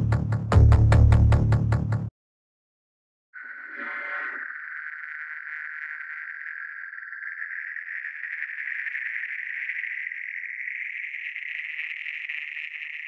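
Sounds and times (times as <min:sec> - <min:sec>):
high-pitched fluttering synth buzz: 0:03.4 - 0:13.0.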